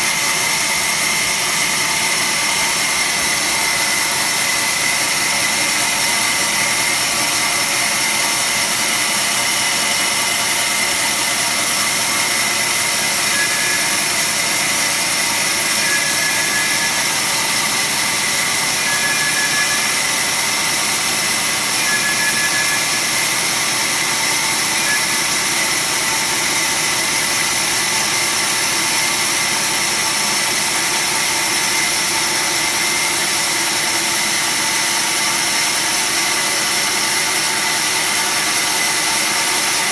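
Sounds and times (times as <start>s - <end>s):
band saw whirring: 0.1s - 39.9s
faint short whistles: 12.7s - 17.6s, 18.5s - 20.2s, 21.7s - 23.5s, 24.5s - 25.4s.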